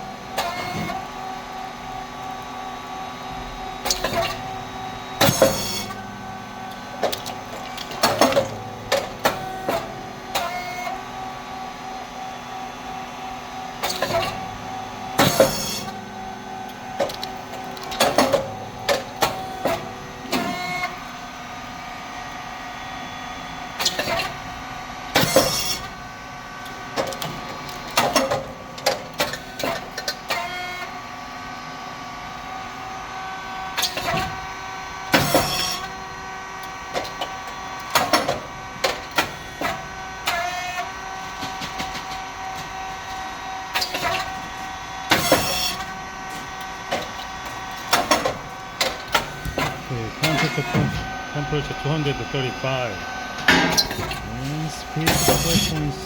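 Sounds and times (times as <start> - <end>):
machine motor hum: 47.4 - 56.0.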